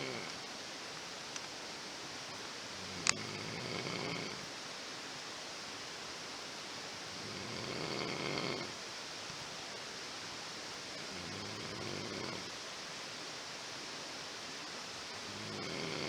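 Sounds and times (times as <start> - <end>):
person snoring: 0.0 - 0.3, 2.9 - 4.4, 7.3 - 8.7, 15.3 - 16.0
steady hiss: 0.0 - 16.0.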